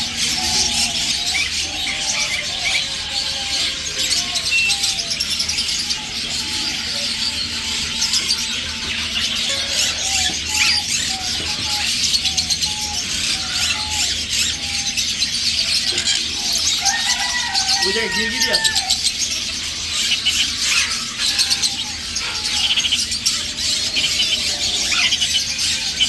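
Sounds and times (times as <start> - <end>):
small birds chirping: 0.0 - 26.0.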